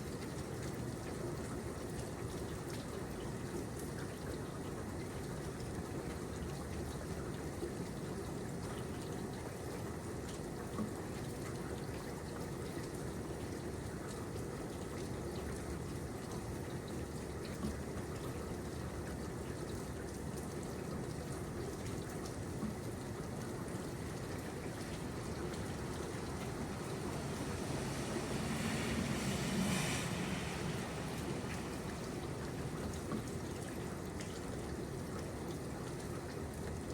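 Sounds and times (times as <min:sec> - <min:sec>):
steady rain falling: 0:07.0 - 0:36.9
water drips: 0:14.9 - 0:29.5, 0:30.4 - 0:36.9.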